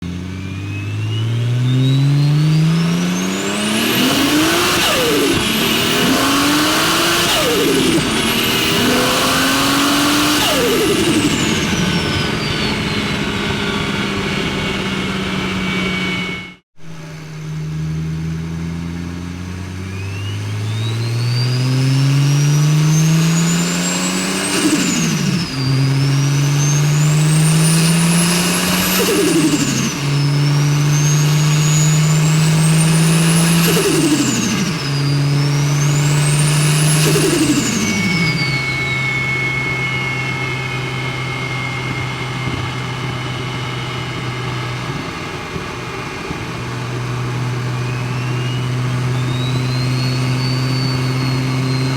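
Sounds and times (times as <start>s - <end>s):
car engine accelerating: 0.0s - 51.9s
turbo whistle: 0.4s - 14.0s, 19.8s - 44.8s, 47.4s - 51.9s
turbo flutter: 22.3s - 43.8s.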